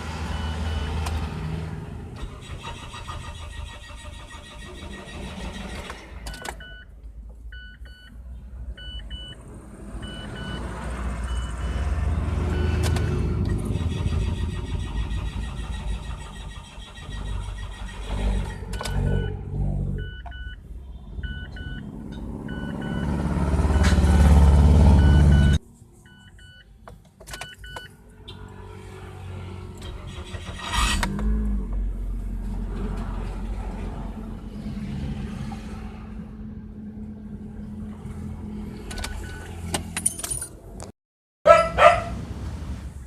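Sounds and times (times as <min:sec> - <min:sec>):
car starter cranking: 0:02.1 - 0:06.7, 0:12.8 - 0:19.2, 0:29.8 - 0:31.8.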